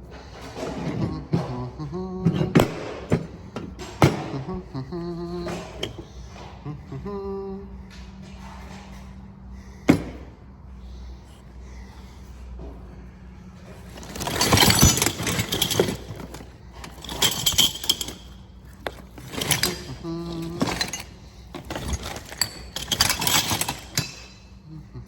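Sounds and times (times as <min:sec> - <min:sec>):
metal hardware rattling and clinking: 0:13.8 - 0:24.6.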